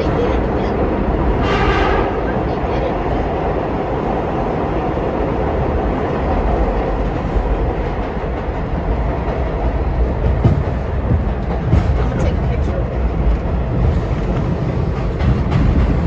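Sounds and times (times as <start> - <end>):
subway train rumbling on rails: 0.0 - 16.0.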